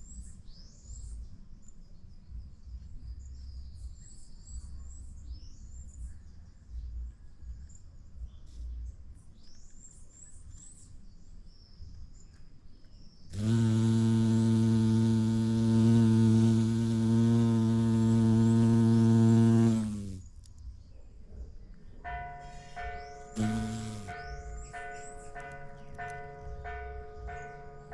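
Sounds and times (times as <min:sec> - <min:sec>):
birds chirping: 0:09.4 - 0:21.0, 0:21.8 - 0:27.9
bumblebee buzzing: 0:13.3 - 0:20.3, 0:23.3 - 0:24.5.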